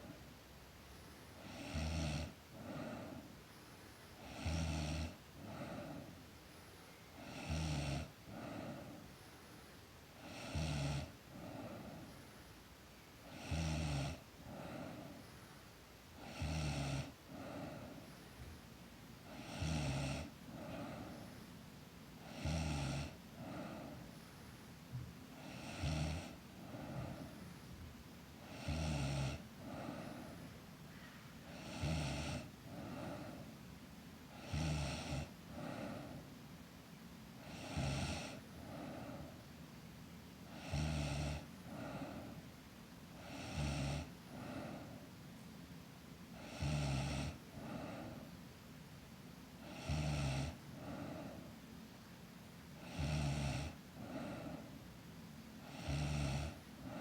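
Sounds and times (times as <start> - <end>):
girl snoring: 1.4 - 3.3, 4.2 - 6.1, 7.1 - 9.1, 10.2 - 12.1, 13.2 - 15.2, 16.2 - 18.0, 19.3 - 21.3, 22.2 - 24.1, 25.3 - 27.3, 28.4 - 30.4, 31.5 - 33.5, 34.3 - 36.3, 37.4 - 39.4, 40.4 - 42.4, 43.1 - 45.0, 46.4 - 48.3, 49.6 - 51.4, 52.8 - 54.7, 55.6 - 57.0
soft breath out: 5.4 - 7.2, 20.5 - 21.7, 23.0 - 25.6, 26.3 - 28.0, 29.4 - 33.7, 35.5 - 36.4, 38.3 - 39.6, 41.4 - 42.6, 43.2 - 45.5, 47.3 - 48.5, 50.5 - 51.8, 53.7 - 54.9.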